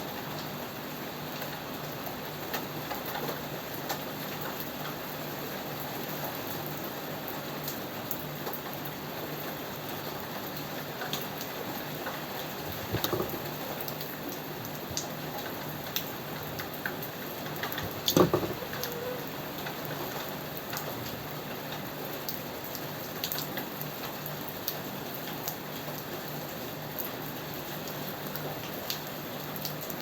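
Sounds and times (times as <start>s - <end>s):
steady rain falling: 0.0s - 30.0s.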